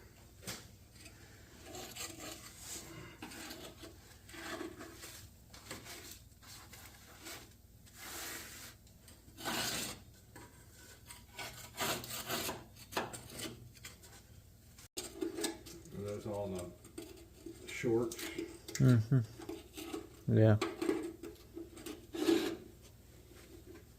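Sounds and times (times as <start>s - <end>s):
scraping and rubbing strokes: 0.9s - 14.3s, 21.6s - 23.8s.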